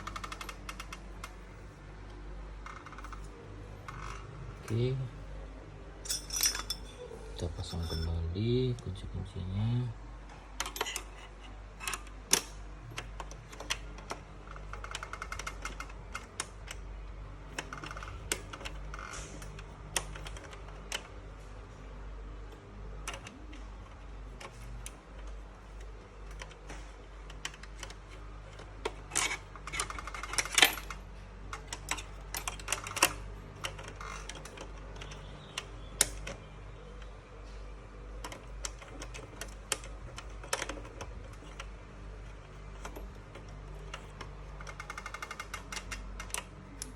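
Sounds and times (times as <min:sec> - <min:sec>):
low steady hum: 0:00.0 - 0:46.9
metal hardware clicks and taps: 0:26.3 - 0:37.6.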